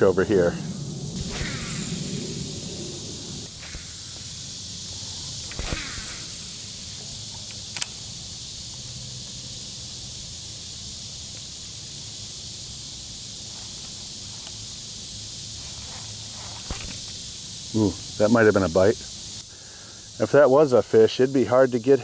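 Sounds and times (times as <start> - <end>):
low steady hum: 0.0 - 8.8
insect chorus hissing: 0.0 - 22.0
sharp click: 5.4 - 8.0.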